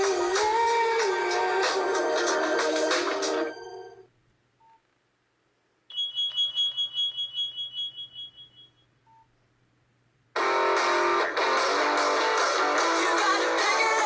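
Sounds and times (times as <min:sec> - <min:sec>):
musical ringtone: 0:02.3 - 0:04.1, 0:05.9 - 0:08.8
rapid pulsing alert beep: 0:05.9 - 0:08.8
short lower beeps: 0:05.9 - 0:09.3.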